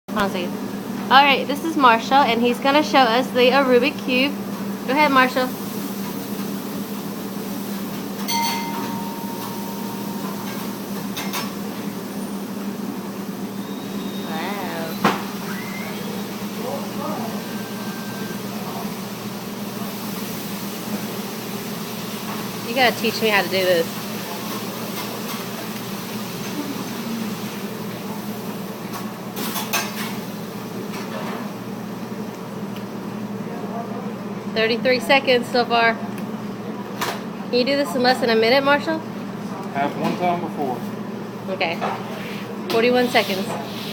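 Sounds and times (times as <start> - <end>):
sharp ringing clink: 8.3 - 10.3.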